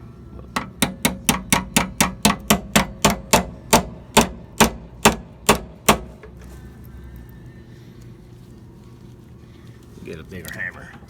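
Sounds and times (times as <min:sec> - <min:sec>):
hammer striking hinge pin: 0:00.6 - 0:06.2.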